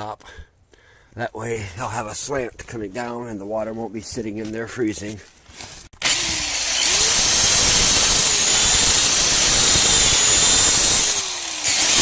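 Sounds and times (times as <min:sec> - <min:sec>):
power drill whining and grinding: 0:06.0 - 0:12.0.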